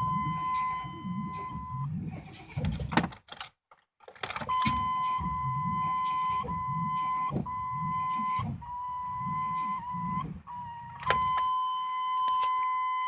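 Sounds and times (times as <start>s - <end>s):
warning chime tone: 0.0s - 1.9s, 4.5s - 13.0s
engine cranking slowly: 4.2s - 11.5s.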